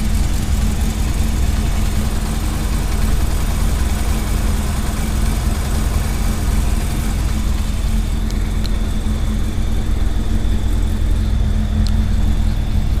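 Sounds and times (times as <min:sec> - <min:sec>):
motorcycle engine idling: 0:00.0 - 0:13.0
faint ticks: 0:08.2 - 0:08.8, 0:11.8 - 0:12.0.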